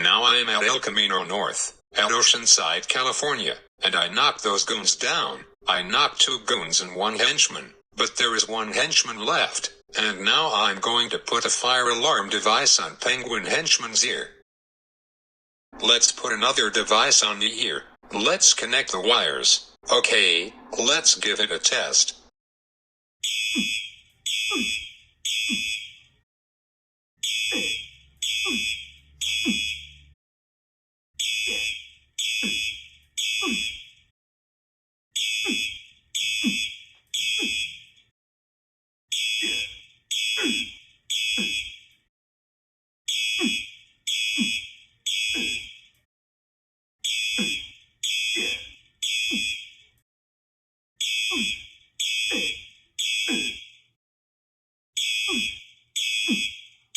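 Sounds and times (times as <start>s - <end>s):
fire alarm beeping: 23.2s - 26.2s, 27.2s - 30.2s, 31.2s - 34.1s, 35.2s - 38.1s, 39.1s - 42.1s, 43.1s - 46.0s, 47.0s - 50.0s, 51.0s - 54.0s, 55.0s - 56.9s.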